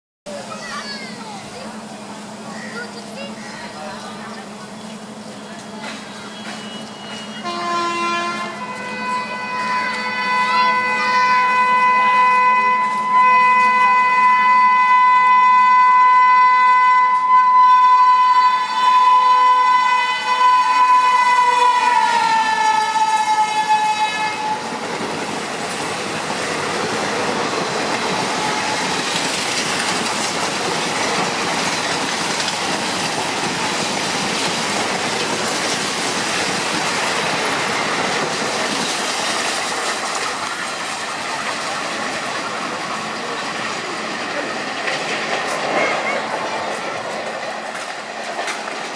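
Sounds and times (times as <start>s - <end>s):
train coaches rushing and clattering: 0.3s - 48.9s
locomotive horn: 6.3s - 24.8s.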